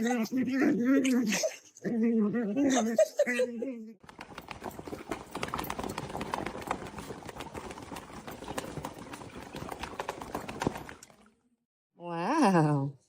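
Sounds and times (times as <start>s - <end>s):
rapid tapping on hard surface: 4.0s - 11.0s.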